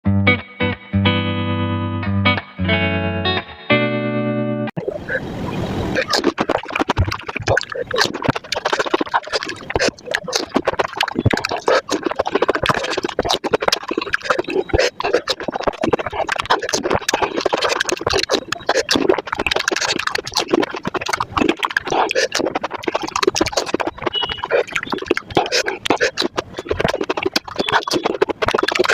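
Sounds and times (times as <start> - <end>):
wet mouth sounds: 5.9 - 28.9.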